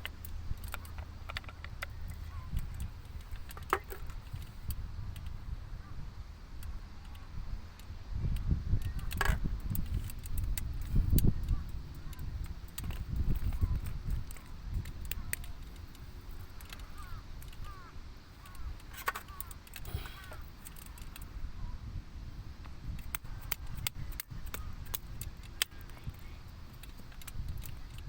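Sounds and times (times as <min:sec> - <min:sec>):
birds chirping: 0:00.0 - 0:04.7, 0:10.8 - 0:22.5, 0:23.1 - 0:28.0.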